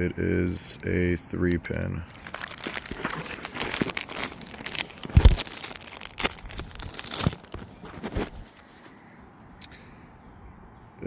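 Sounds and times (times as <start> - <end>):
packaging crinkling and rustling: 1.7 - 9.0.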